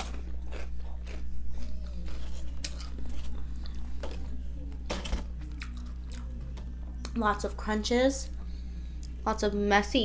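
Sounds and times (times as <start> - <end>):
close chewing with crunches: 0.0 - 4.4
low electrical hum: 0.0 - 10.0.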